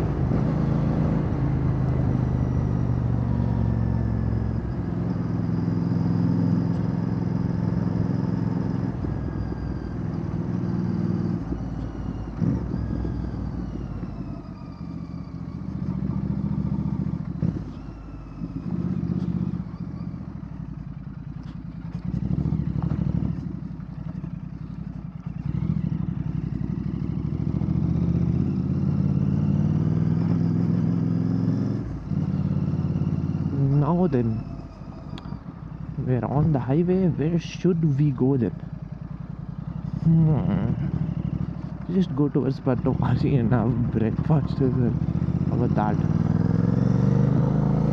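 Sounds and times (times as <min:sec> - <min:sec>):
motorcycle engine revving: 0:00.0 - 0:47.9.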